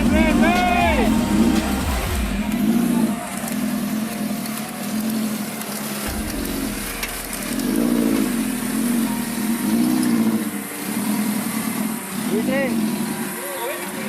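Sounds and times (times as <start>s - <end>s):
off-road engine revving: 0.0s - 14.0s
low rumble: 6.1s - 11.5s.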